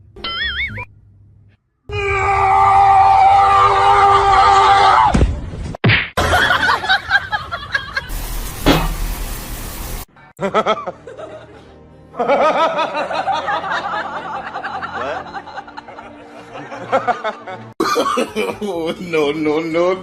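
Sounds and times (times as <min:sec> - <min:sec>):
people laughing: 0:06.2 - 0:08.1, 0:10.4 - 0:19.9
music: 0:10.1 - 0:20.0.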